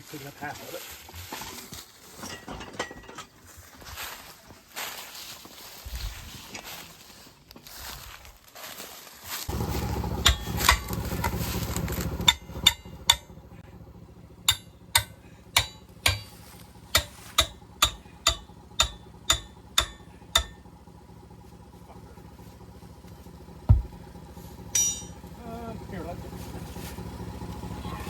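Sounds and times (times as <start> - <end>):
machine running loudly: 9.5 - 22.5.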